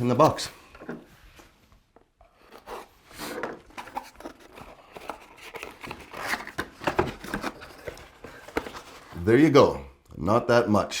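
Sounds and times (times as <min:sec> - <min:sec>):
packaging rustling and clicking: 0:02.4 - 0:09.2.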